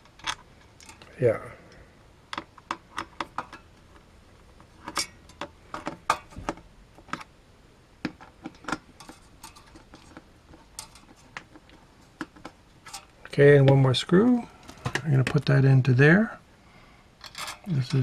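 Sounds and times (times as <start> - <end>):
metal screws clicking and tapping: 8.0 - 13.1.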